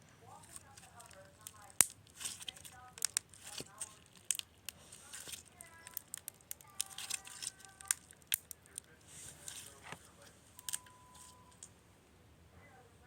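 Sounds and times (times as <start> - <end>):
slime clicking and popping: 0.8 - 8.9.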